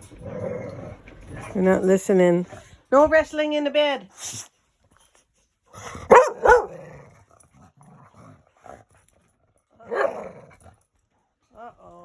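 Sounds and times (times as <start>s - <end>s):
dog growling: 0.0s - 2.7s, 5.8s - 9.0s, 9.8s - 10.9s
dog barking: 6.1s - 6.9s, 9.8s - 10.3s.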